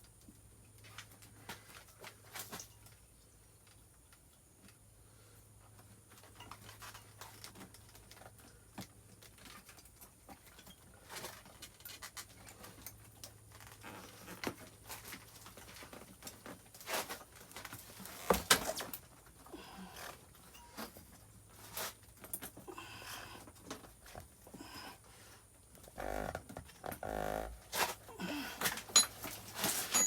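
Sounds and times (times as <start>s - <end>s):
hands handling bike parts and tools: 25.8s - 30.0s.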